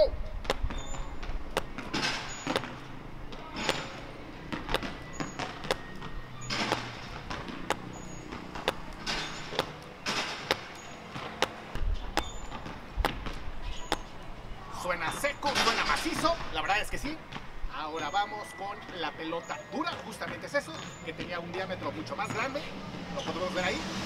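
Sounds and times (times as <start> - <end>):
ball bouncing on hard floor: 0.4 - 14.1.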